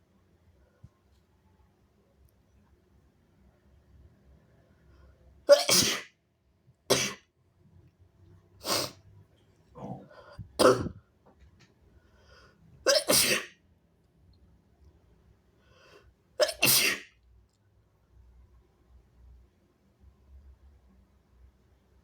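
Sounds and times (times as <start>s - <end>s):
person sneezing hard: 5.5s - 6.2s, 6.9s - 7.2s, 8.6s - 9.0s, 10.6s - 11.0s, 12.9s - 13.6s, 16.4s - 17.1s
faint breaths: 9.8s - 10.6s, 11.9s - 12.8s, 15.5s - 16.2s.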